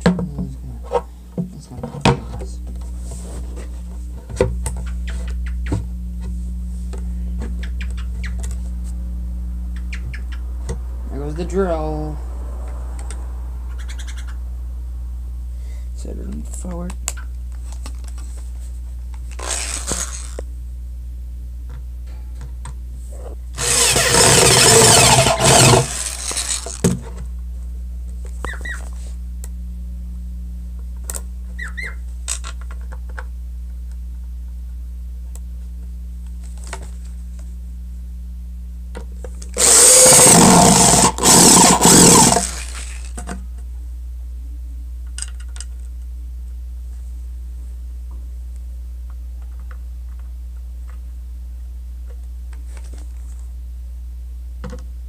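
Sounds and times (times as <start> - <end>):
steady low hum: 0.0 - 55.0
power drill whirring: 19.3 - 20.4, 23.6 - 26.9, 39.6 - 43.2.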